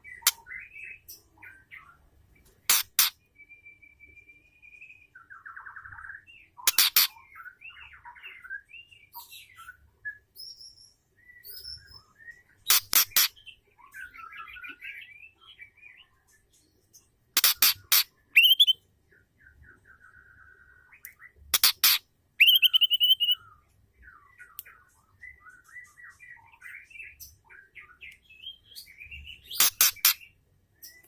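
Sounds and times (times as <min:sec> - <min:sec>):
bird chirps and trills: 0:00.0 - 0:03.3, 0:05.2 - 0:09.8, 0:10.4 - 0:31.0
sharp ticking bird notes: 0:17.4 - 0:18.8, 0:21.0 - 0:23.5, 0:29.4 - 0:31.0.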